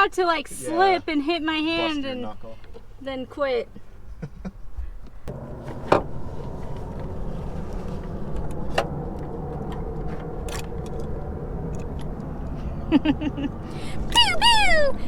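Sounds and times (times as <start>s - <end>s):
low motor hum: 5.2s - 15.0s.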